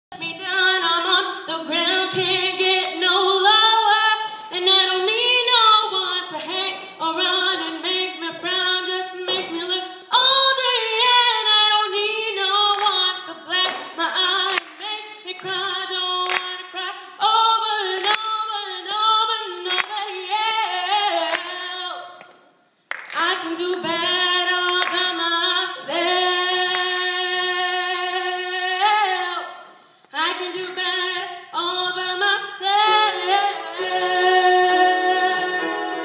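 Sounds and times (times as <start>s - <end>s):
woman singing unaccompanied: 0.1s - 22.2s, 23.1s - 35.7s.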